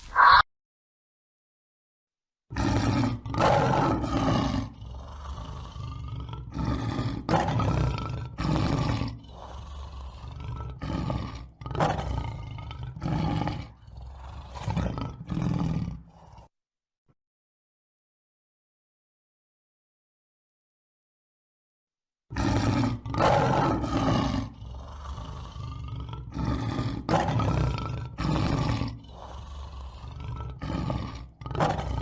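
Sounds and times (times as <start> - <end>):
lion roaring: 2.5 - 16.5, 22.3 - 32.0.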